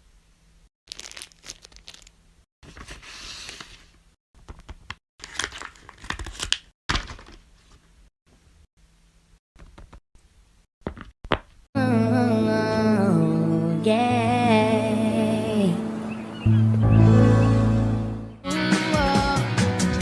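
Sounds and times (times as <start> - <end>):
plastic toys crinkling: 0.9 - 2.3.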